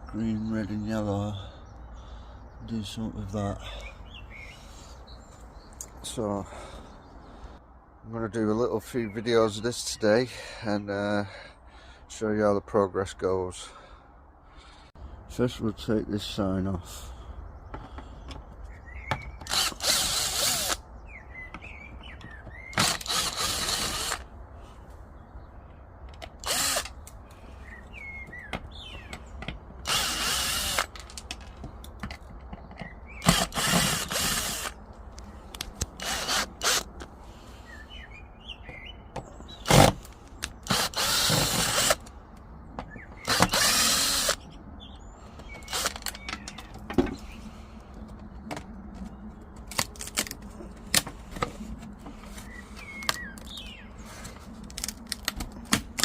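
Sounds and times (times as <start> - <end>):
power drill backing out screws: 22.7 - 24.2, 33.2 - 34.7, 40.6 - 42.0, 43.2 - 44.4, 45.6 - 46.2.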